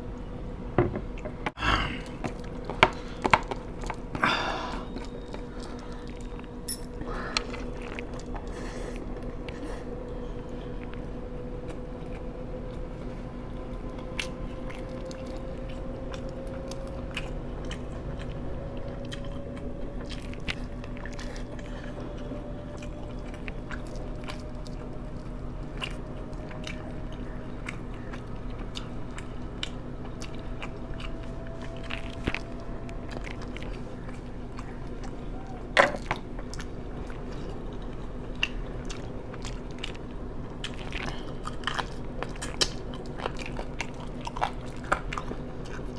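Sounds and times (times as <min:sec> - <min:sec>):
low background hum: 0:00.0 - 0:45.9
person chewing food: 0:01.1 - 0:45.9
crisp crunches: 0:19.0 - 0:45.9.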